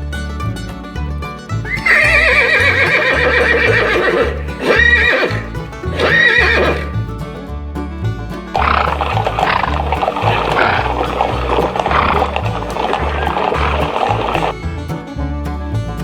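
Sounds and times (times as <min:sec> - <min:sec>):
background music with bass: 0:00.0 - 0:16.0
horse whinnying: 0:01.8 - 0:05.4, 0:08.6 - 0:14.5.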